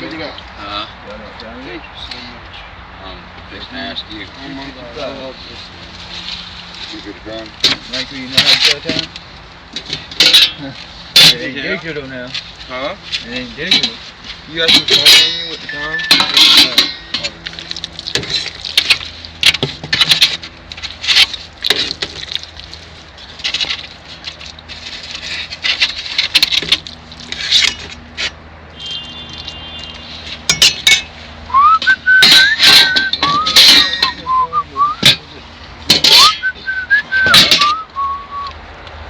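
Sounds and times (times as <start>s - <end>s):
whistled notes: 31.5s - 35.0s, 36.1s - 38.5s
small hard objects clinking: 32.0s - 34.4s, 35.9s - 38.0s.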